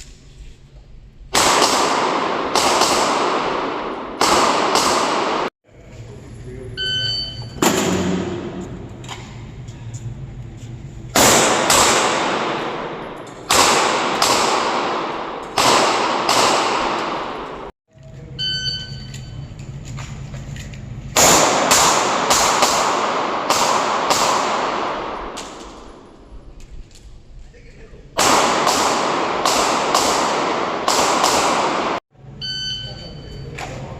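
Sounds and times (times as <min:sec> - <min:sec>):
handgun shots echoing: 0:01.3 - 0:05.5, 0:11.2 - 0:17.7, 0:21.2 - 0:26.3, 0:28.2 - 0:32.0
shot timer beep: 0:06.8 - 0:07.6, 0:18.4 - 0:19.5, 0:32.4 - 0:33.6.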